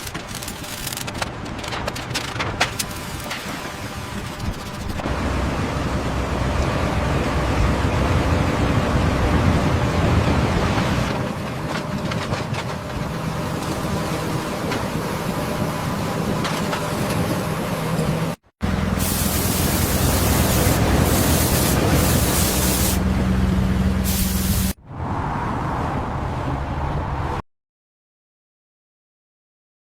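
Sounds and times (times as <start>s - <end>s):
heavy machinery engine rumble: 2.4s - 24.8s
broad hiss: 19.0s - 23.1s, 24.0s - 24.8s.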